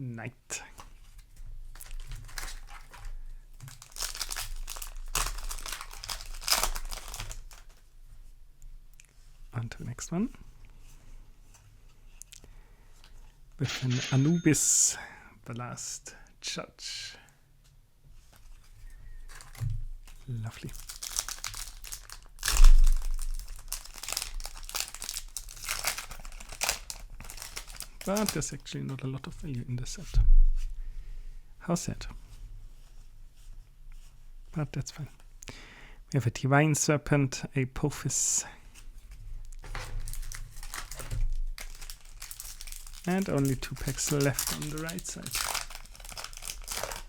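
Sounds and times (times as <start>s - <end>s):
foil wrapper crinkling: 1.7s - 7.8s, 19.3s - 28.6s, 40.0s - 47.0s.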